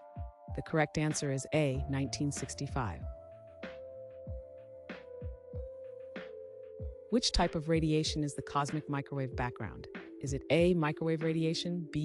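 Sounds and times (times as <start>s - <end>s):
soft low beat: 0.0s - 3.2s, 4.2s - 5.8s, 6.8s - 11.5s.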